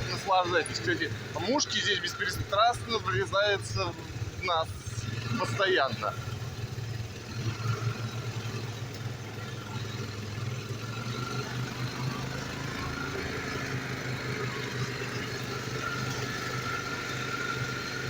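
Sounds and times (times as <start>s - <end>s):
quad bike engine running: 0.0s - 18.0s.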